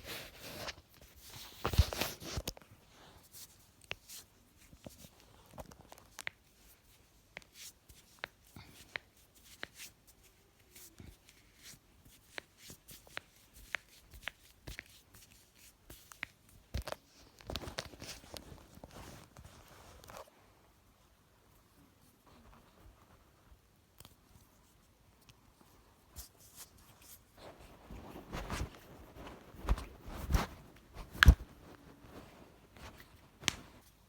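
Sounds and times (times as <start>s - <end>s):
rustling of movement: 16.8s - 20.4s, 24.2s - 34.0s.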